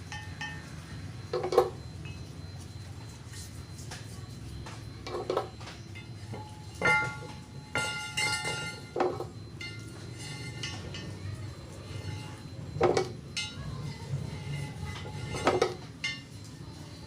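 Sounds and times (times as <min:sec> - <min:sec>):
steady low hum: 0:00.0 - 0:17.0
metal scraping: 0:09.6 - 0:11.1, 0:14.1 - 0:16.2.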